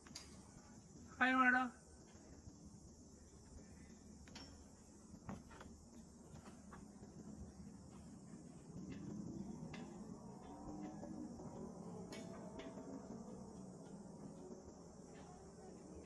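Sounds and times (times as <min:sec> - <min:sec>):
chorus of forest insects: 0:00.0 - 0:16.0
light ticks: 0:04.2 - 0:04.8.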